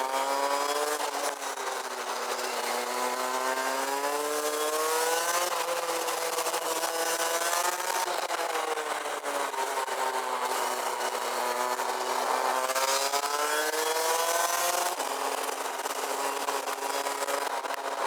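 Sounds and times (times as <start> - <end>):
kart engine revving: 0.0 - 8.0.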